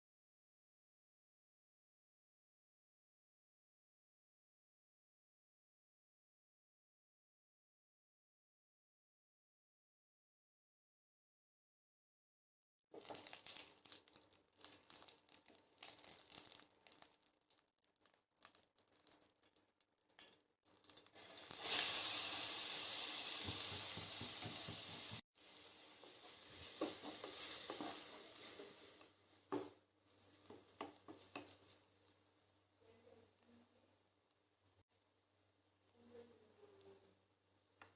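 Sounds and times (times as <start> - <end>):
food sizzling in a pan: 12.9 - 32.6
loud steady sizzle: 12.9 - 33.5.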